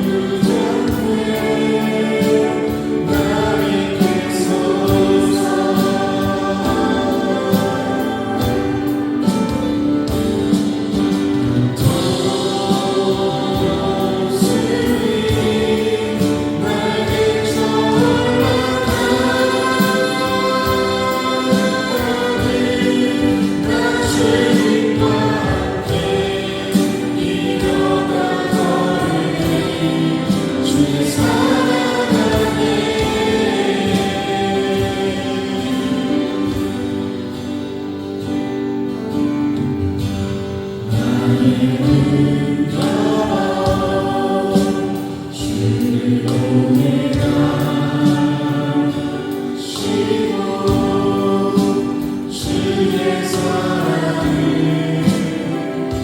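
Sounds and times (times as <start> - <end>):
gospel choir singing: 0.0 - 56.0.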